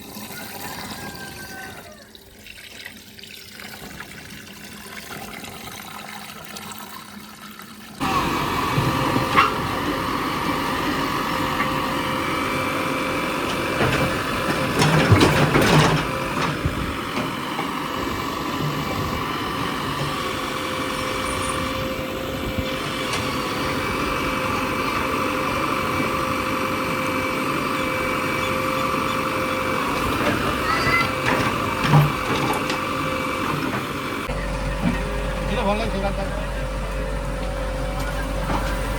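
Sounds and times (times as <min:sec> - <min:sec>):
diesel engine running: 0:08.0 - 0:38.9
engine knocks: 0:13.1 - 0:38.9.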